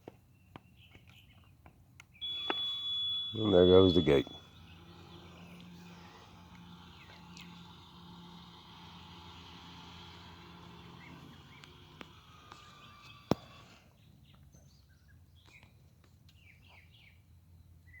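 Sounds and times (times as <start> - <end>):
birds chirping: 0.0 - 18.0
motor stopping click: 2.2 - 13.9
gate motor humming: 2.2 - 14.0.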